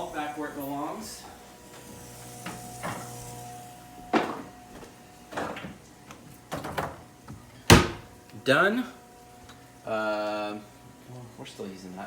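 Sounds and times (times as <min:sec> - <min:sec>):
cupboard door knocks and clunks: 0:07.7 - 0:08.1.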